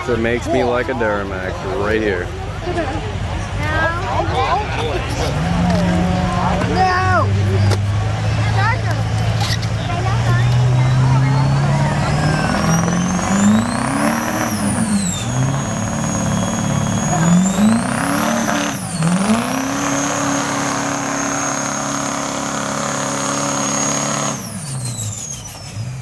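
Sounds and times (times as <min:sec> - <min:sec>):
diesel engine under full load: 0:00.0 - 0:26.0
high-pitched turbo whistle: 0:10.8 - 0:25.8.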